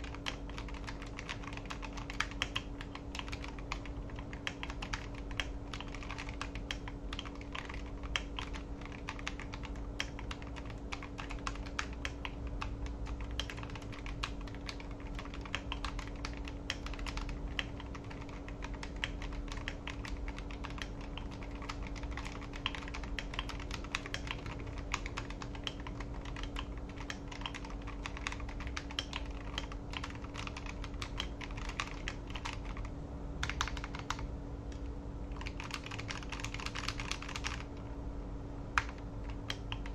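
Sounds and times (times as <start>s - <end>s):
mechanical keyboard typing: 0.0s - 34.2s, 35.3s - 37.8s, 38.8s - 39.9s.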